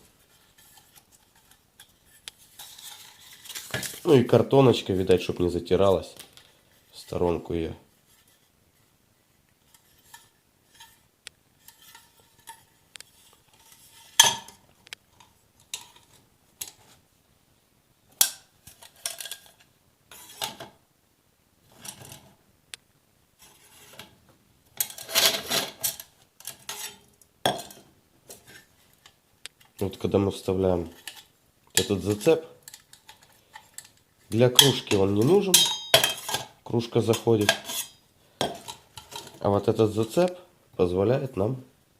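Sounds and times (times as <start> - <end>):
metal cookware clinking and knocking: 24.8 - 27.9, 34.6 - 36.5, 37.1 - 39.4.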